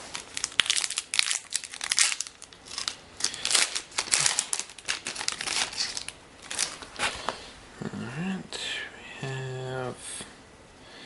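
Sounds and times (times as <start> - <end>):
cards scraping and rustling: 2.7 - 7.4.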